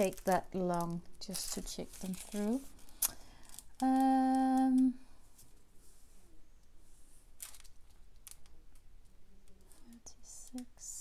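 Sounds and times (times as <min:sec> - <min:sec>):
plastic bags crinkling: 0:00.0 - 0:05.0, 0:07.3 - 0:08.6.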